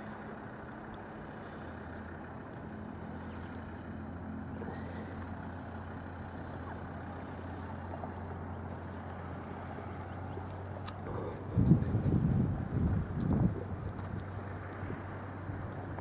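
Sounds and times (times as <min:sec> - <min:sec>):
low engine-like hum: 0:00.0 - 0:16.0
wind buffeting microphone: 0:11.0 - 0:16.0.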